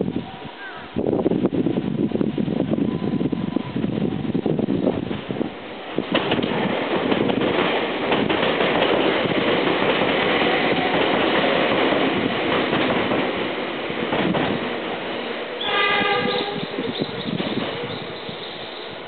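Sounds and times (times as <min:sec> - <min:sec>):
train wheels rumbling on rail: 0:00.0 - 0:19.0
wheels clacking over rail joints: 0:06.0 - 0:19.0.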